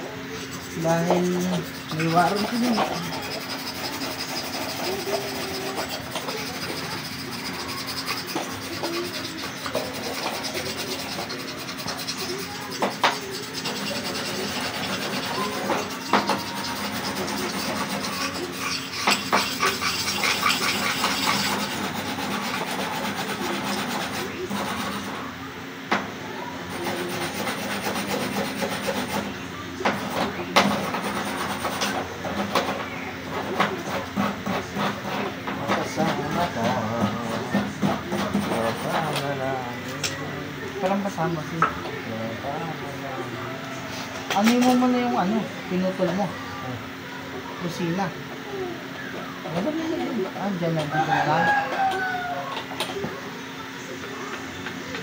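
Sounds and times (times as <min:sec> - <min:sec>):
scraping with rapid ticks: 0:00.4 - 0:25.1.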